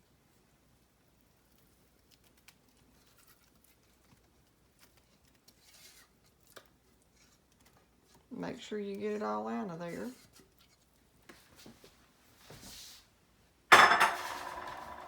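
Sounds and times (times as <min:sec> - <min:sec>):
utensil scraping saucepan: 0:13.7 - 0:15.0.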